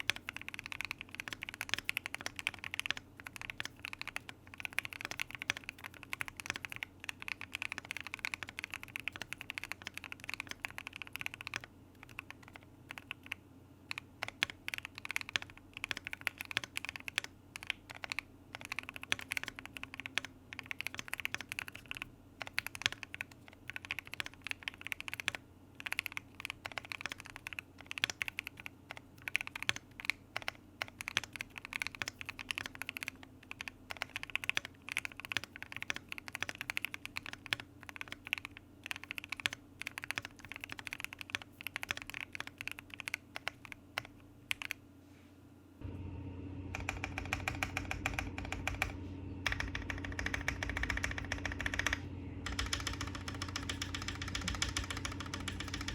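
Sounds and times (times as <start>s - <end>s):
mechanical keyboard keystroke clacks: 0.0s - 44.8s, 46.8s - 55.9s
low hum: 45.7s - 55.9s.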